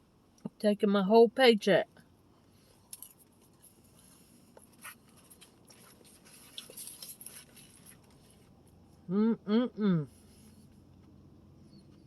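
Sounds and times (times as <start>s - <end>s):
soft chewing: 2.3s - 9.1s, 10.1s - 12.0s
rustling: 2.4s - 8.8s.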